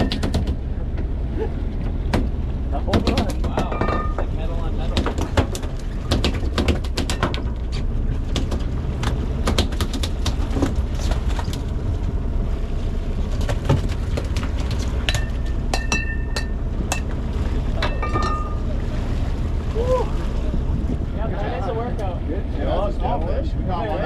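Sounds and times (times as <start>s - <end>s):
boat engine running: 0.0s - 24.0s
sharp knocks and clatters: 2.1s - 11.6s.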